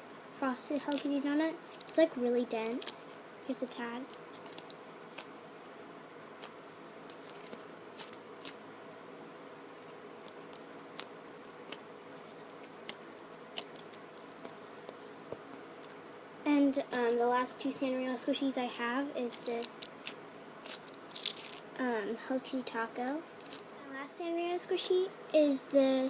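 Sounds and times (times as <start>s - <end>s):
low room hum: 0.0s - 26.0s
toy handling clicks and rustles: 0.8s - 6.0s, 7.1s - 8.6s, 10.2s - 15.0s, 16.7s - 23.7s.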